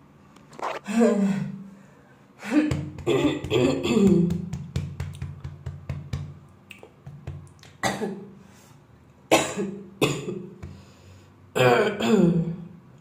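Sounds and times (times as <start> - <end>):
girl coughing: 3.1 - 4.3, 7.8 - 8.3, 9.3 - 10.4.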